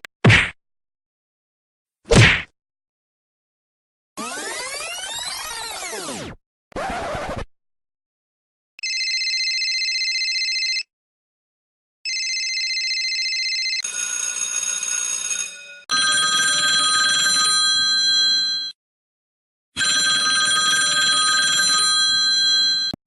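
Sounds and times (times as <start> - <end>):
telephone bell ringing: 8.8 - 10.9, 12.1 - 18.8, 19.8 - 23.0.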